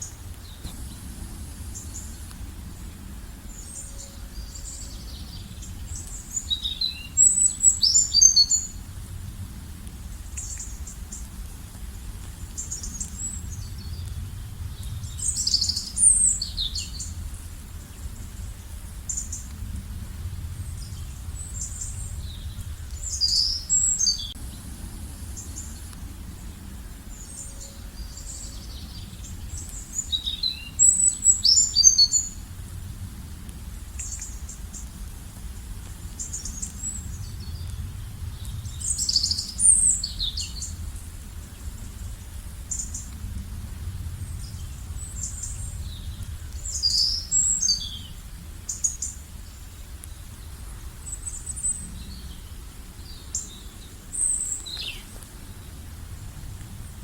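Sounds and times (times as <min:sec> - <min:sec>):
low background rumble: 0:00.0 - 0:57.0
songbirds singing: 0:00.0 - 0:57.0
bird chirps: 0:03.6 - 0:08.8.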